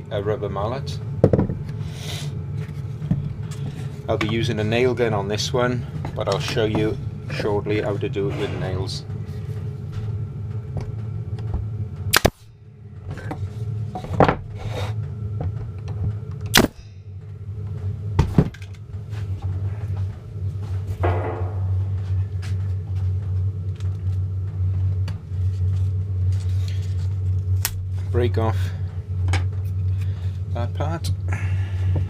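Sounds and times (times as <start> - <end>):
nail gun shots: 12.1 - 12.4, 16.5 - 16.8.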